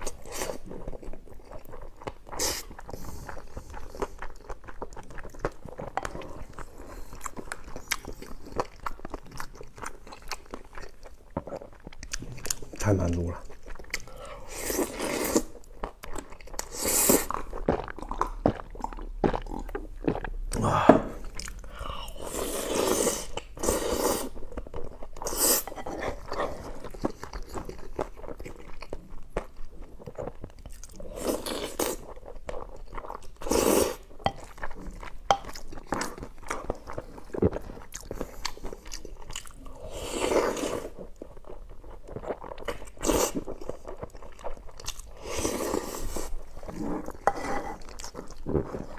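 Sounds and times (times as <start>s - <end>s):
person biting and chewing food: 13.5s - 48.9s.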